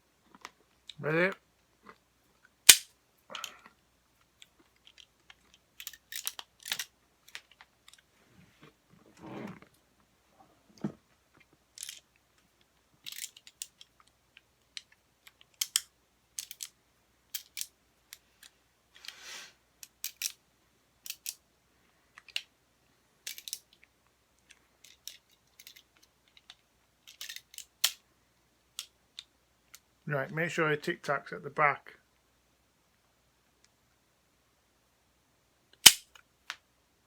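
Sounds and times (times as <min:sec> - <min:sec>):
soft rustle: 0:07.2 - 0:12.6, 0:18.1 - 0:19.6
plastic clicks and clacks: 0:24.8 - 0:28.0.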